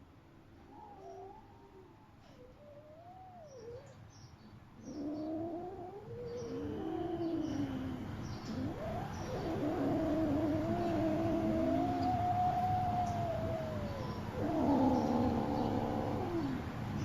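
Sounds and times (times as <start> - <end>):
cats yowling: 0.7 - 4.0, 4.8 - 17.0.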